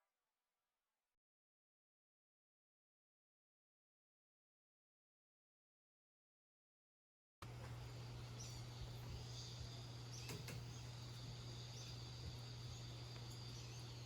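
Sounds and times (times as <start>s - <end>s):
low steady hum: 7.4s - 14.0s.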